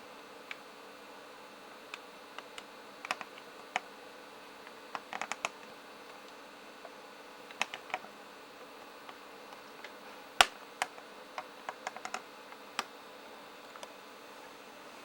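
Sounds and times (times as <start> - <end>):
faint steady hum: 0.0 - 15.0
laptop keyboard and trackpad clicks: 2.4 - 3.9, 4.9 - 5.6, 7.5 - 8.0, 11.7 - 12.2.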